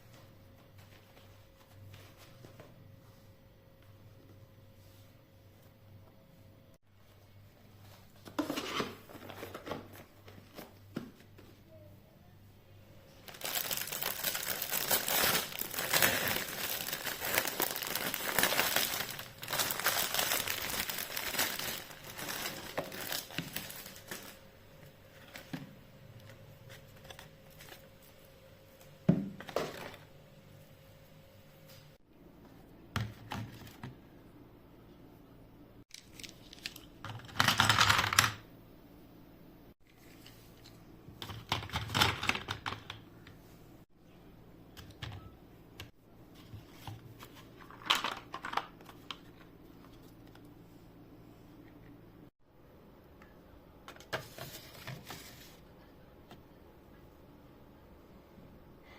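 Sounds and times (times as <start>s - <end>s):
material crinkling and tearing: 13.2s - 24.4s.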